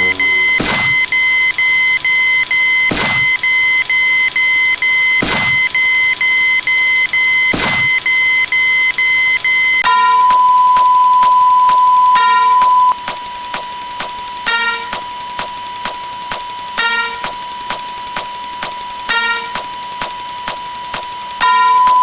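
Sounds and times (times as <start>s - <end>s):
falling electronic sweep: 0.0s - 1.4s
rapidly pulsing high beep: 0.0s - 22.0s.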